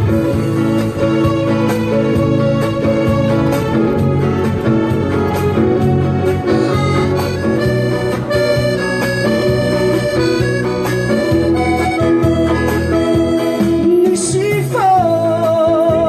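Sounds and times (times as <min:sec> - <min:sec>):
instrumental melody over bass: 0:00.0 - 0:16.0.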